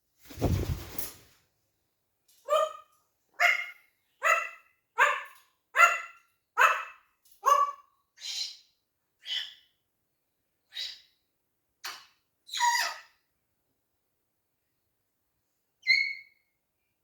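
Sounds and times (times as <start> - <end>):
parrot imitating dog barks: 3.4 - 7.8.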